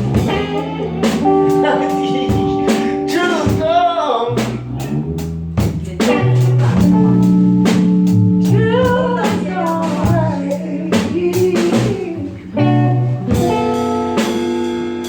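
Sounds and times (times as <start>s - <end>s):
bass notes: 0.0s - 15.0s
drum kit steady beat: 0.0s - 15.0s
electric guitar lead: 0.0s - 15.0s.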